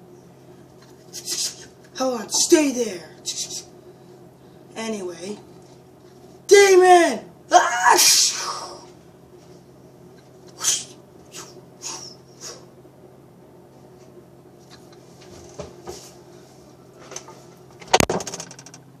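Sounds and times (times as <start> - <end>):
steady low hum: 0.0 - 19.0
soft knocks and rustles: 15.1 - 16.2.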